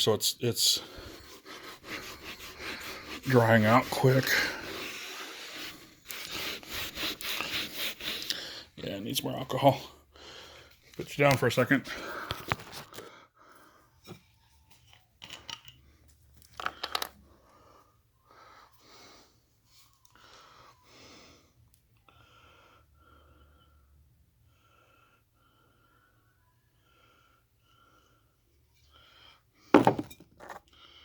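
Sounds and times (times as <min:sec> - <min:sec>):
camera knocks and clatter: 0:29.8 - 0:30.6.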